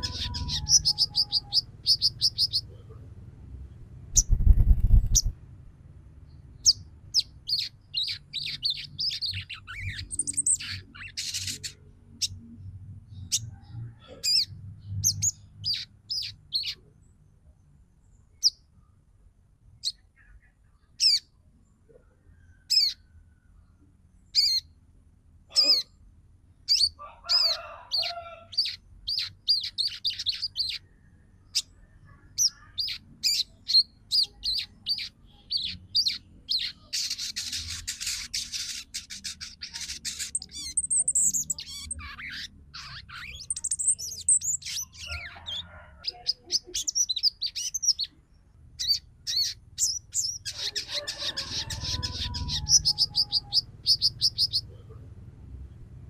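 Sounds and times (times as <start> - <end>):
bird chirping and chattering: 0.0 - 3.0, 4.1 - 5.4, 6.4 - 12.5, 13.1 - 16.9, 19.8 - 21.3, 22.7 - 23.0, 24.3 - 24.7, 26.6 - 30.9, 31.5 - 54.8.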